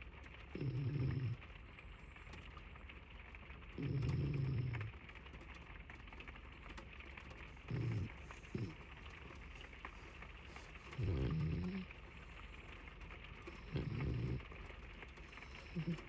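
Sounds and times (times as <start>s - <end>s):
steady rain: 0.0s - 16.0s
dog snoring: 0.5s - 1.4s, 3.8s - 5.0s, 7.6s - 8.8s, 10.4s - 16.0s.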